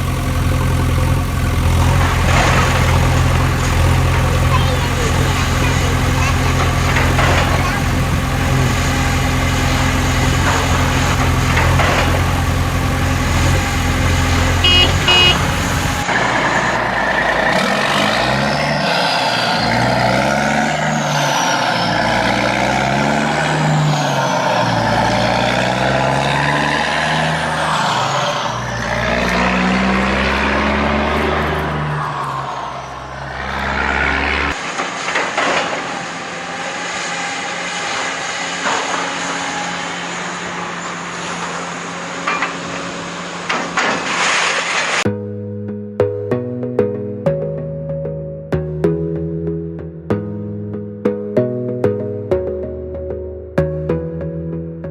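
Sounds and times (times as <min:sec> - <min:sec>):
truck engine idling: 0:00.0 - 0:17.7
engine revving: 0:00.0 - 0:45.2
short beeps: 0:14.6 - 0:15.5.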